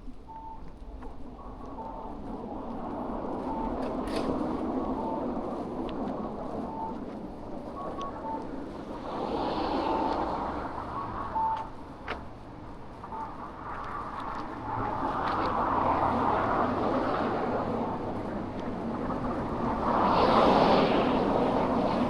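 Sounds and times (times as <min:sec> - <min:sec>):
traffic going by: 0:00.1 - 0:22.0
short electronic beeps: 0:00.3 - 0:00.7, 0:06.7 - 0:07.0, 0:10.9 - 0:11.7, 0:13.0 - 0:13.4.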